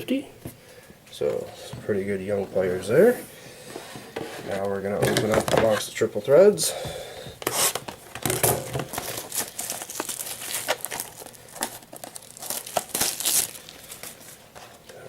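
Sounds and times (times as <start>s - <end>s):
plastic shrink-wrap tearing: 7.5s - 14.4s.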